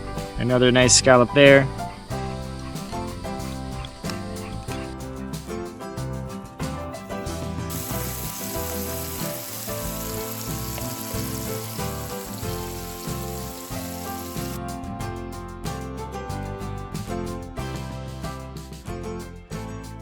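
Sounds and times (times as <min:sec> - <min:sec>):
background music: 0:00.0 - 0:20.0
food sizzling in a pan: 0:07.7 - 0:14.6.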